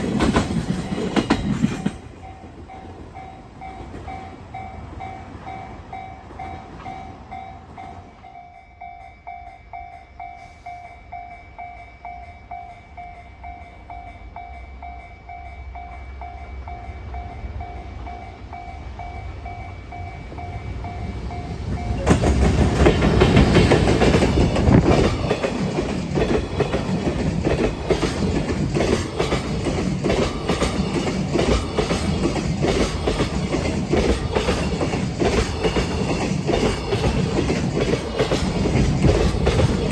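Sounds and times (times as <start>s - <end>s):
freight train passing: 0.0s - 39.9s
wheels clattering over rail joints: 21.0s - 39.9s.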